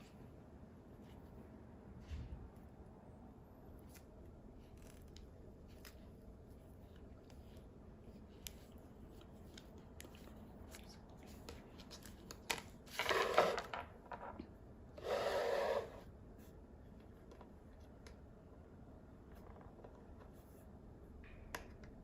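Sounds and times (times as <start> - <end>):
small clicks and taps: 21.2 - 22.0.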